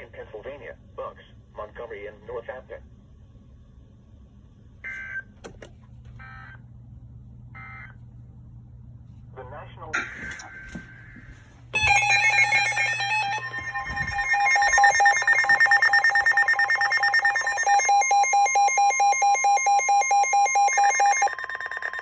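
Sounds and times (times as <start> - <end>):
steady alarm tone: 10.0 - 22.0
fast electronic beeping: 11.8 - 22.0.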